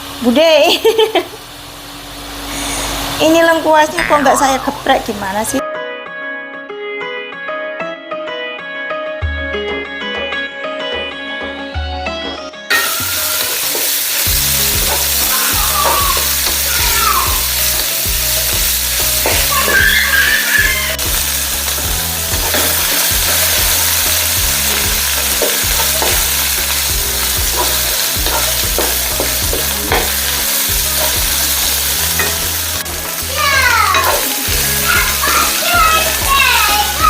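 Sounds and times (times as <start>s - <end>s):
spices sizzling in hot oil: 0.0s - 5.4s, 12.7s - 37.0s
spatula stirring in pan: 13.2s - 37.0s.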